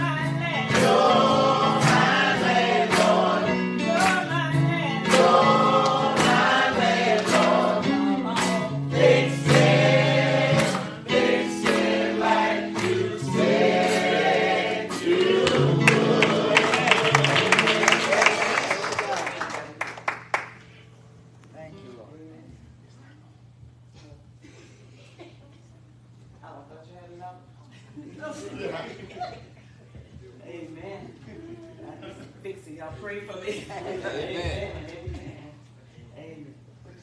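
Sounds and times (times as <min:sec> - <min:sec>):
church choir singing gospel: 0:00.0 - 0:18.8.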